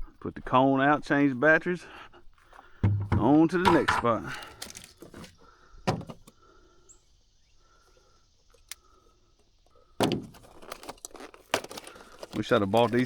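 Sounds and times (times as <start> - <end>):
loud knock: 2.8 - 4.0
rustling and handling clicks: 2.8 - 5.4, 10.3 - 13.0.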